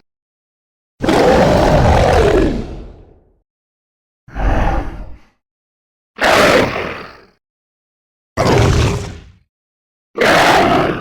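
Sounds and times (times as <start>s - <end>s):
harsh breathy creature growl: 1.0s - 3.3s, 4.3s - 5.4s, 6.2s - 7.4s, 8.4s - 9.4s.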